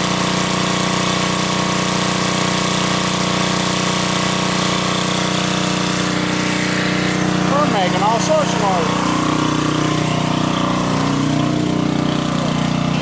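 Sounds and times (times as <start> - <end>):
small generator engine running: 0.0 - 13.0.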